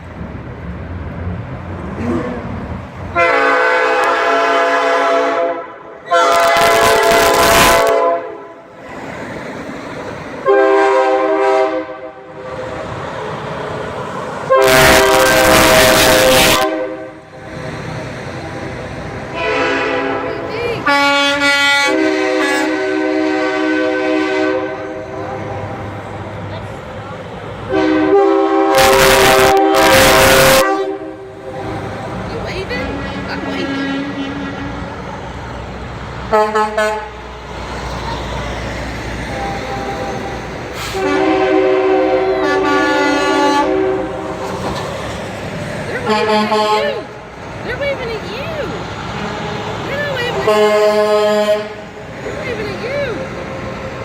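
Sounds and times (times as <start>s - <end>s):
diesel engines rumbling: 0.0s - 54.0s
truck air horns blowing: 3.1s - 8.6s, 10.4s - 12.5s, 14.4s - 17.2s, 19.3s - 25.8s, 27.7s - 31.8s, 33.5s - 34.8s, 36.3s - 37.3s, 39.2s - 44.5s, 46.0s - 47.1s, 49.9s - 51.9s.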